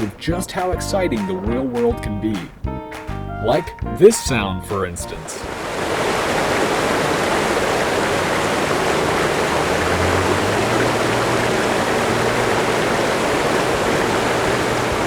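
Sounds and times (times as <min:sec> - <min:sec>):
running water rushing: 0:05.1 - 0:15.0.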